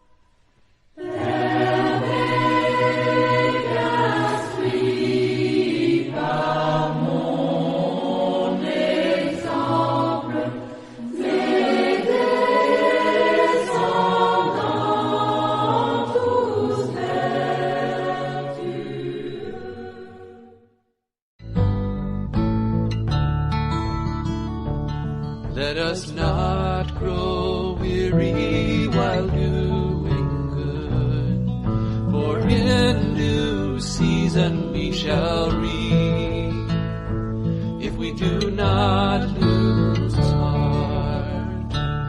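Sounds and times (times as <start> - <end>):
choir singing: 1.0 - 20.8, 26.2 - 30.9, 32.1 - 36.0, 38.0 - 41.6
strummed acoustic guitar: 21.4 - 42.0.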